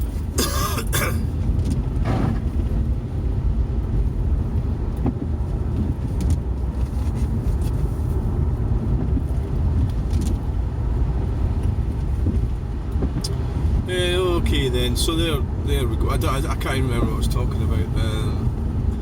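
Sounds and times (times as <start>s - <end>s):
engine and tyre rumble: 0.0s - 19.0s.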